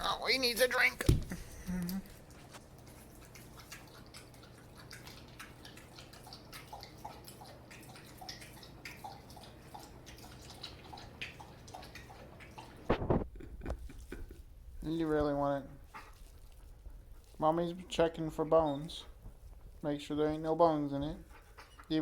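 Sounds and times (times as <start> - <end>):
dog lapping water: 2.2 - 13.2
water dripping: 2.8 - 12.9.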